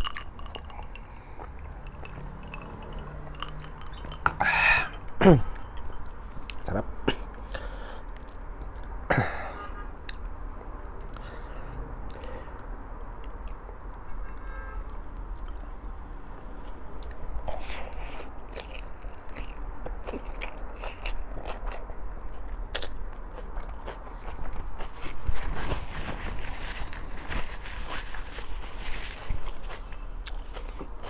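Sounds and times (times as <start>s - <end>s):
wet mouth clicks and smacks: 0.0s - 6.6s
person chewing food: 0.0s - 9.0s, 10.0s - 14.2s, 14.9s - 31.0s.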